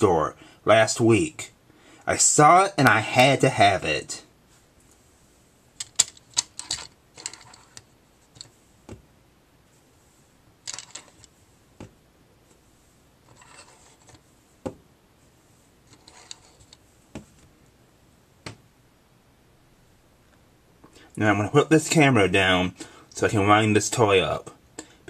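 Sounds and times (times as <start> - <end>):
rubbing: 9.6 - 17.5.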